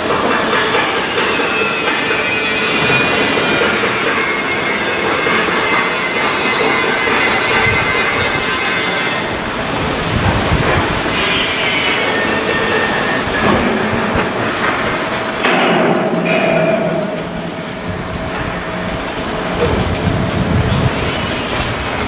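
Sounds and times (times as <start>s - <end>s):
machine clatter and hiss: 0.0s - 22.0s
metallic squealing: 0.7s - 15.1s.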